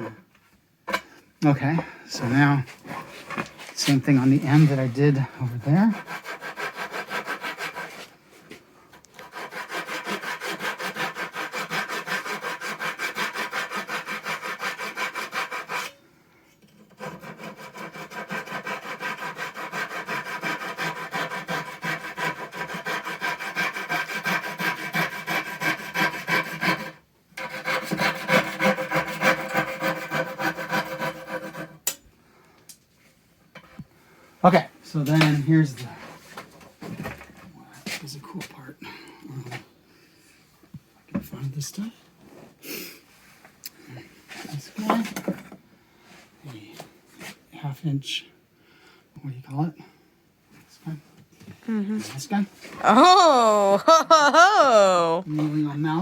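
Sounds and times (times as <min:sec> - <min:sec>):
hand saw cutting wood: 0:05.4 - 0:08.1, 0:09.0 - 0:16.0, 0:16.8 - 0:31.9.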